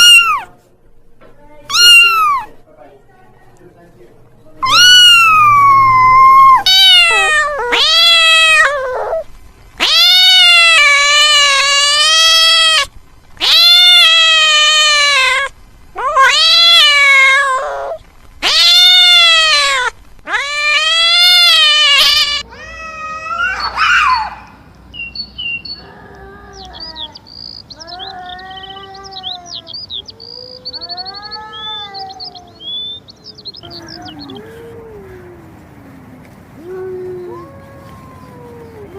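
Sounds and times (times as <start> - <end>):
cat chirping: 0.0 - 0.5, 1.7 - 2.6, 4.6 - 24.4, 25.0 - 34.8
cat meowing: 0.0 - 0.5, 1.7 - 2.6, 4.6 - 24.4, 27.8 - 35.4, 36.6 - 38.9.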